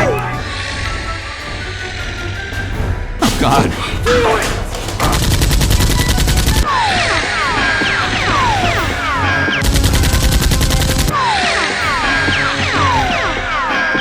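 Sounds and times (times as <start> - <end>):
background music: 0.0 - 14.0
machine-gun fire: 4.4 - 6.7, 9.6 - 11.1.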